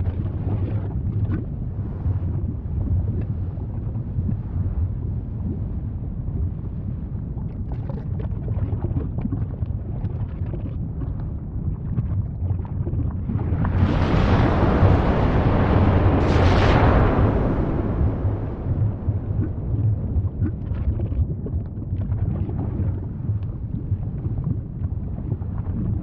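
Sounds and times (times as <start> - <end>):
crackles and pops: 0.0 - 6.8, 7.4 - 26.0
volcano deep roar: 13.2 - 23.5.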